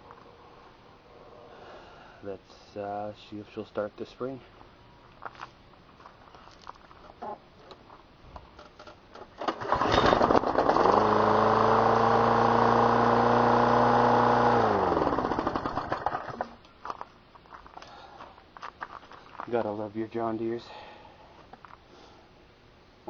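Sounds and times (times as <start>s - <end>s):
lawn mower engine starting: 8.8s - 16.6s.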